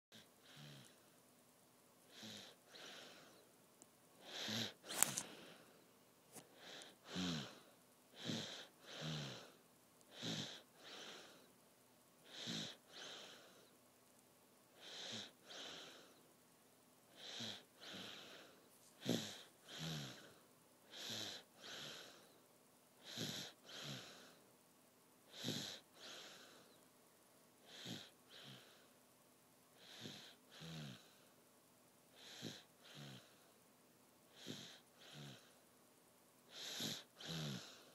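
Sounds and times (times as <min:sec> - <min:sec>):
person snoring softly: 0:00.1 - 0:01.1, 0:02.1 - 0:03.5, 0:04.2 - 0:11.5, 0:12.2 - 0:13.8, 0:14.7 - 0:16.2, 0:17.1 - 0:22.4, 0:23.0 - 0:24.4, 0:25.3 - 0:26.8, 0:27.6 - 0:29.0, 0:29.8 - 0:31.3, 0:32.1 - 0:33.6, 0:34.3 - 0:35.6, 0:36.5 - 0:37.9.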